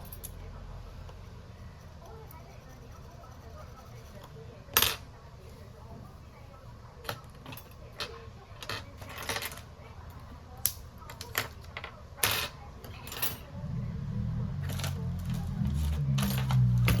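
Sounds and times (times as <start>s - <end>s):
low hum: 13.5s - 17.0s.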